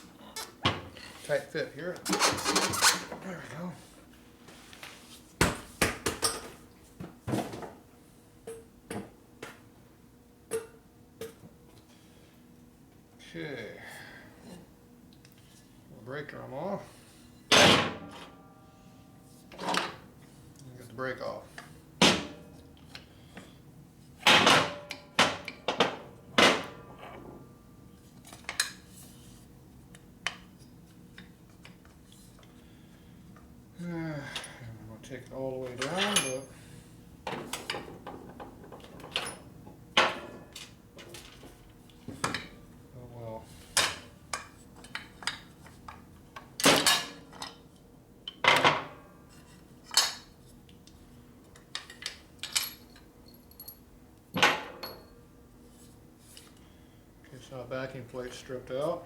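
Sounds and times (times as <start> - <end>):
metal tools clanking: 2.0 - 3.2, 35.6 - 36.7
metal tools clinking and knocking: 35.8 - 36.6, 51.7 - 55.1.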